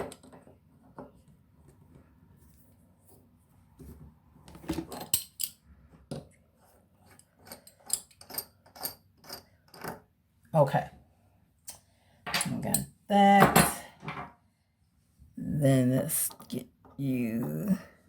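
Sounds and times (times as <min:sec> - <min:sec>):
metal faucet parts clicking: 0:05.0 - 0:05.6, 0:07.1 - 0:10.0.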